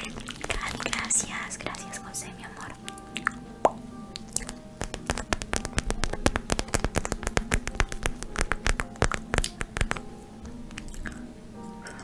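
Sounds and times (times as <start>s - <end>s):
tapping and scratching on a pad: 0.1s - 1.1s, 4.3s - 10.2s.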